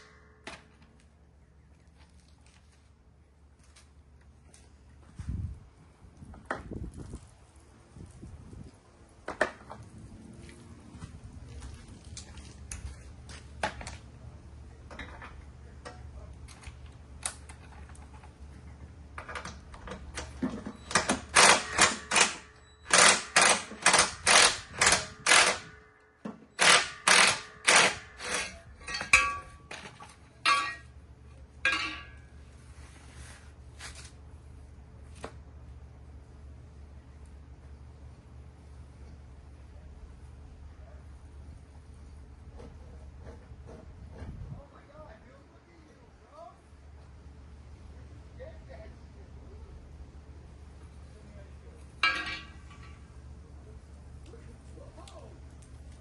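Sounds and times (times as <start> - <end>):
loud rapid metallic strokes: 26.6 - 29.6.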